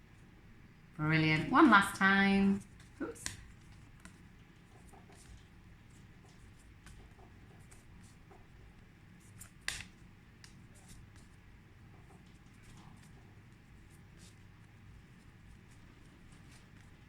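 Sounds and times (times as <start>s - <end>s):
light taps of cards: 2.6s - 8.5s, 9.3s - 11.4s.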